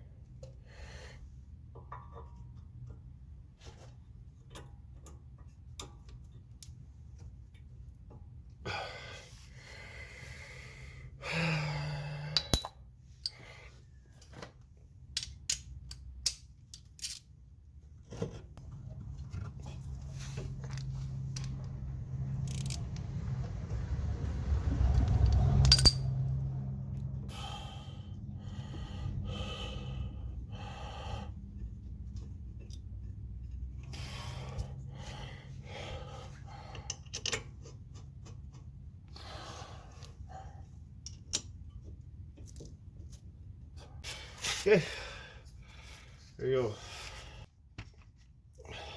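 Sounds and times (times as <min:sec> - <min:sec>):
metal tools clinking: 0:12.4 - 0:13.4, 0:15.1 - 0:17.3, 0:25.6 - 0:26.2.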